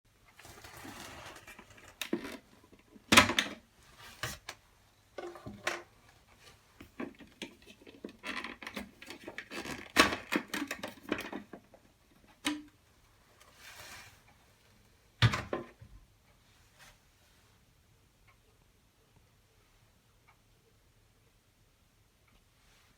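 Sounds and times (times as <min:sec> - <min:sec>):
fan cover clicks and rustling: 0:03.0 - 0:03.6.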